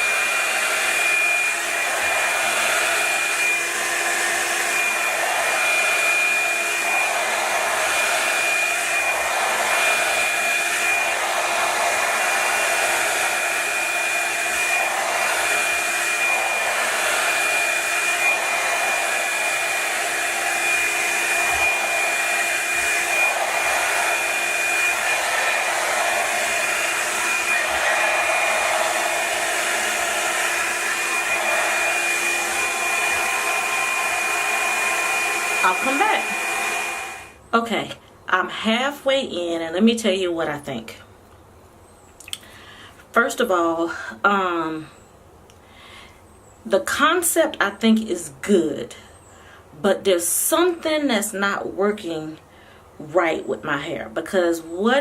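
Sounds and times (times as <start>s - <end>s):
hot-air brush dryer running: 0.0s - 37.4s.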